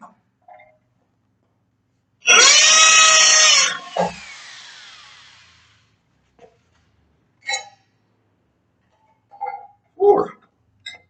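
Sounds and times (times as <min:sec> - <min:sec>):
drill motor winding down whine: 0:02.3 - 0:05.8
hammer drill boring into concrete: 0:02.3 - 0:05.8.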